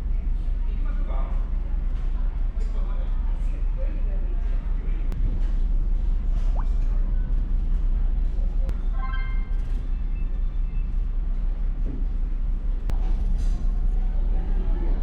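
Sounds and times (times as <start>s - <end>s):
short pitched tone: 8.8s - 9.7s.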